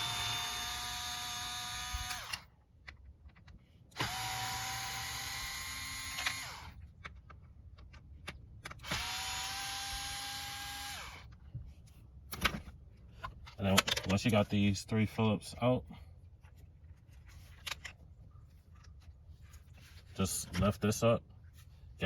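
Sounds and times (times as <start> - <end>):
electric screwdriver whirring: 0.0 - 2.5, 4.0 - 6.8, 8.8 - 11.3.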